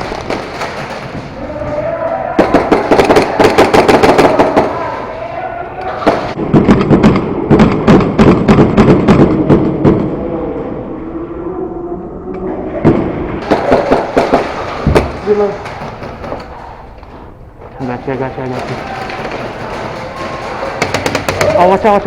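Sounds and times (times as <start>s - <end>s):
airsoft guns firing rapidly: 0.0s - 5.1s, 13.4s - 16.7s, 18.4s - 22.0s.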